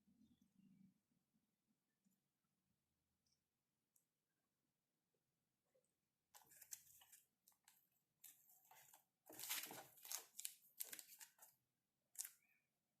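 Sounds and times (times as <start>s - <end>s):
packaging crinkling and rustling: 8.2s - 11.5s.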